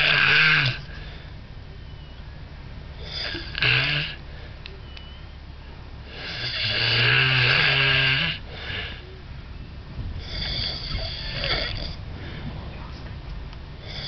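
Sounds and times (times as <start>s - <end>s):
person snoring: 3.0s - 4.2s, 10.2s - 12.0s
soft breath: 10.2s - 13.0s.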